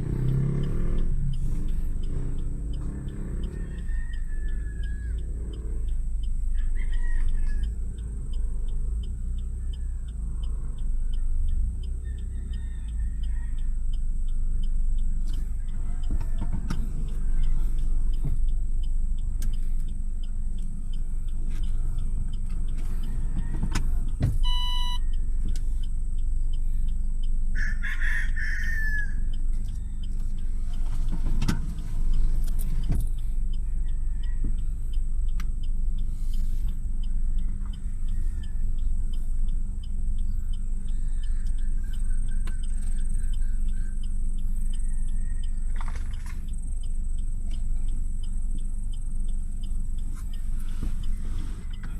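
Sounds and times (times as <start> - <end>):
rooster crowing: 3.0 - 5.6, 6.5 - 7.8, 12.0 - 14.0, 15.1 - 17.9, 22.9 - 24.2, 27.5 - 30.6, 33.6 - 34.9, 37.0 - 38.8, 40.8 - 46.3.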